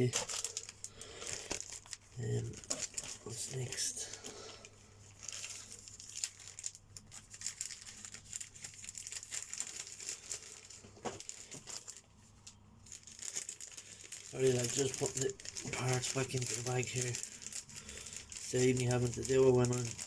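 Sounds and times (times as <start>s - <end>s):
plastic bag crinkling: 0.0s - 20.0s.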